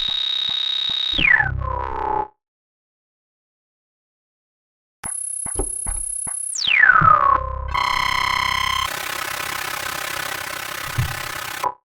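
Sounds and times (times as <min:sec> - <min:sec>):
buzzing electronic hum: 0:07.7 - 0:11.7
high electronic whine: 0:07.7 - 0:11.7.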